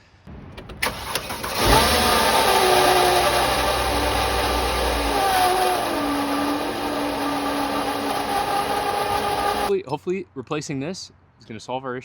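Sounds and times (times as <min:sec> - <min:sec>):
belt screeching: 0:00.8 - 0:09.7
car engine running: 0:00.8 - 0:09.7.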